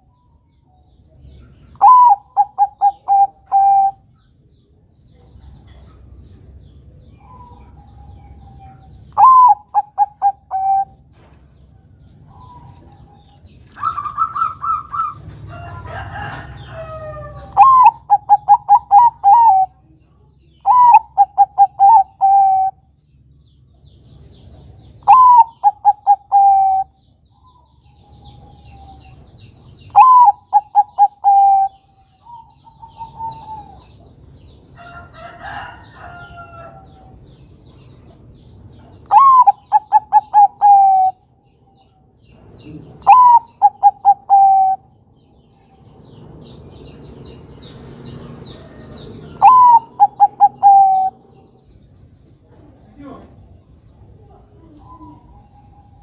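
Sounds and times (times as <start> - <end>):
small birds chirping: 0.0 - 56.0
dove cooing: 1.7 - 4.0, 7.2 - 11.0, 12.3 - 15.4, 16.2 - 19.8, 20.6 - 22.8, 25.0 - 29.2, 29.9 - 34.1, 39.1 - 41.3, 42.6 - 44.9, 48.7 - 51.5
rough bird call: 39.1 - 41.3, 48.4 - 51.4.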